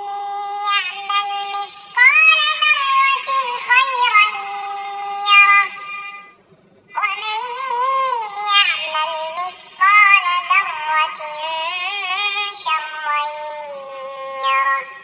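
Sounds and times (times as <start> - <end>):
high synthetic voice chanting: 0.0 - 6.3, 6.9 - 15.0.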